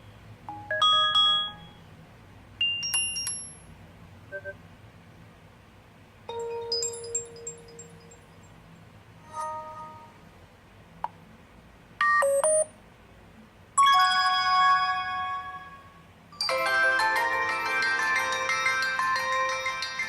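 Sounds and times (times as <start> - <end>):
ringtone melody: 0.5 - 1.8, 6.3 - 8.3, 9.2 - 10.2, 13.8 - 20.0
smartphone alert chimes: 0.5 - 1.8, 9.2 - 10.2.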